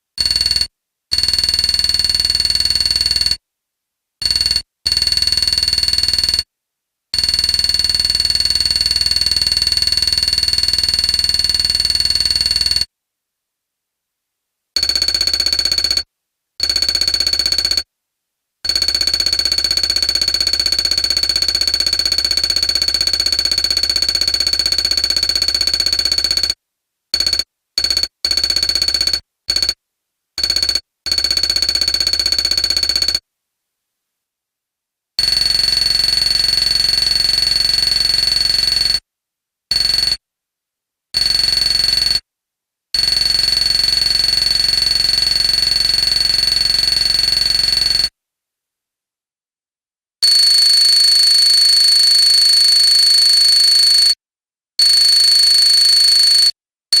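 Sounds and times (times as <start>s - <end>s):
rapid electronic beeping: 14.8s - 16.0s, 16.6s - 17.8s, 18.7s - 26.6s, 27.2s - 29.8s, 30.4s - 33.2s.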